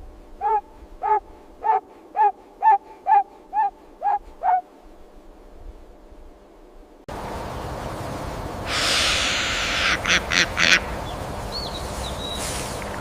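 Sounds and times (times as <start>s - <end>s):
steady background noise: 0.0s - 13.0s
short sharp animal calls: 0.4s - 4.6s, 8.7s - 10.9s
rush of noise: 7.1s - 13.0s.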